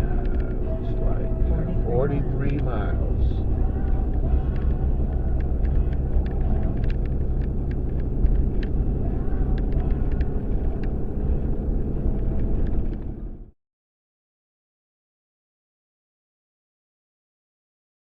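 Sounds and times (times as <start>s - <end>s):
car engine and tyre rumble: 0.0s - 13.5s
faint ticks and rattles: 3.6s - 13.2s.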